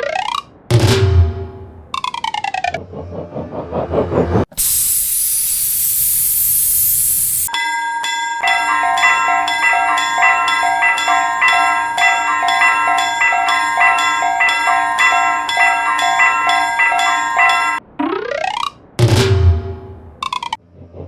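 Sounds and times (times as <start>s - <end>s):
steady held tone: 5.0s - 17.8s
railroad crossing alarm bell: 6.9s - 17.8s.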